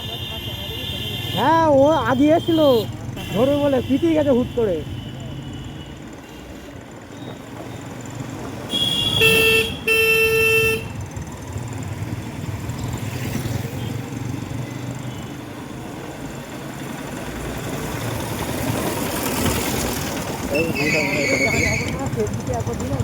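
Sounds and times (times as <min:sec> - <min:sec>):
vehicle horn honking: 0:00.0 - 0:07.4, 0:08.7 - 0:11.0
road and wind noise: 0:00.0 - 0:23.0.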